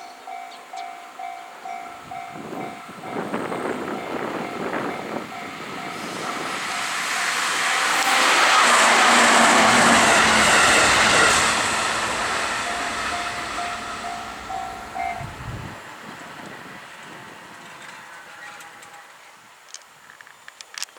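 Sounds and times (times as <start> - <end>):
crossing warning bell ringing: 0.0 - 15.8
train passing: 0.0 - 19.4.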